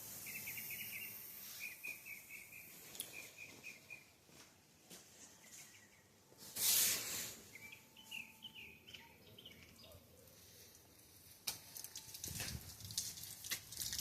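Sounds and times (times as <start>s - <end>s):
birds chirping: 0.0s - 11.0s
short loud hiss: 6.4s - 7.6s.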